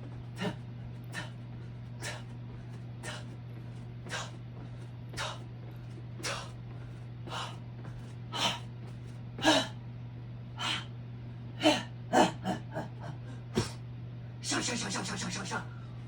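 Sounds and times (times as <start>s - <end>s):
steady low hum: 0.0s - 16.0s
person breathing forcefully: 0.2s - 8.7s, 9.4s - 9.8s.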